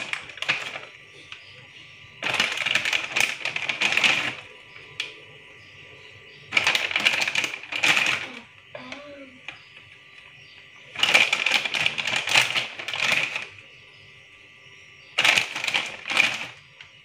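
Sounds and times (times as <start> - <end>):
buns clattering in steamer tray: 0.0 - 5.2, 6.4 - 10.0, 10.9 - 13.7, 15.1 - 17.0.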